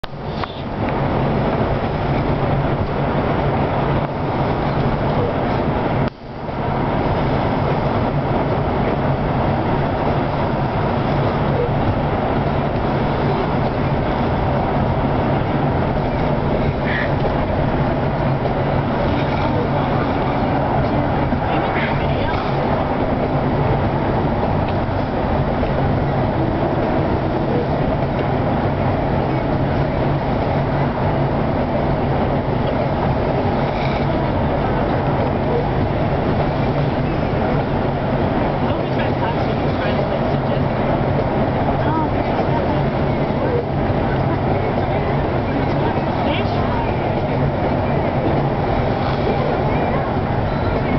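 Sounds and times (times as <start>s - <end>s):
car cabin road noise: 0.0s - 50.9s.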